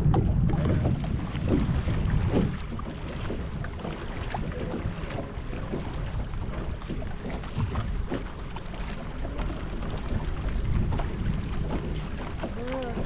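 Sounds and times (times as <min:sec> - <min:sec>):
boat engine low rumble: 0:00.0 - 0:13.0
wind buffeting microphone: 0:00.0 - 0:13.0.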